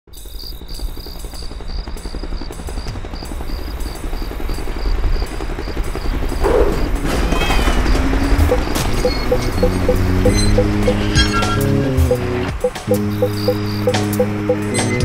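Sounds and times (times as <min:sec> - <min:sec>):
insect-like chirping: 0:00.1 - 0:07.0, 0:07.8 - 0:14.7
low fluttering rumble: 0:00.8 - 0:14.4
steady high tone: 0:08.2 - 0:15.0.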